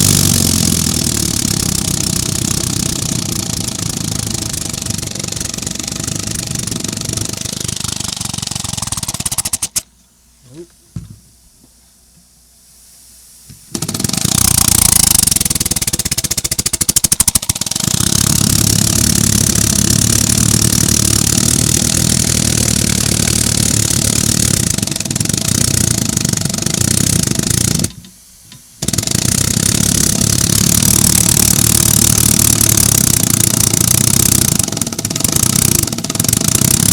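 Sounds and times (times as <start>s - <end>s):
compressed-air piston engine running: 0.0s - 9.9s, 13.7s - 28.1s, 28.8s - 36.9s
loud hiss of air: 12.6s - 18.0s.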